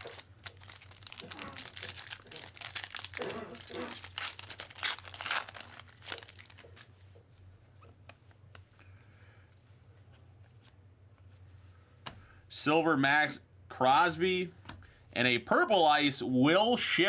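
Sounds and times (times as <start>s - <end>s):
plastic wrapper tearing and crinkling: 0.0s - 7.0s.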